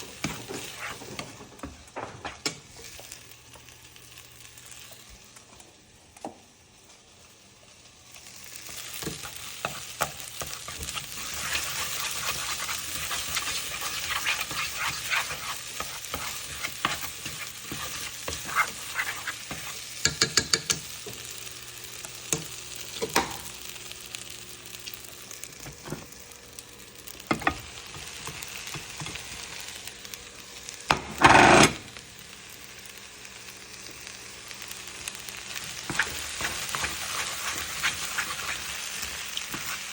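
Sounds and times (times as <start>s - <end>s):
fried rice sizzling in a pan: 0.0s - 39.9s
spatula scraping a pan: 0.2s - 1.2s, 9.0s - 20.0s, 35.8s - 39.9s.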